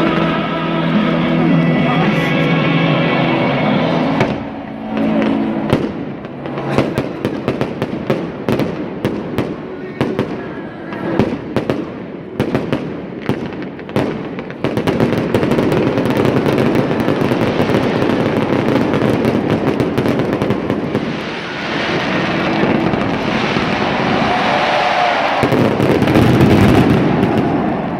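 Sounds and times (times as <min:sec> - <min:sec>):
fireworks bangs: 0:00.0 - 0:27.9
fireworks crackling: 0:00.0 - 0:27.9.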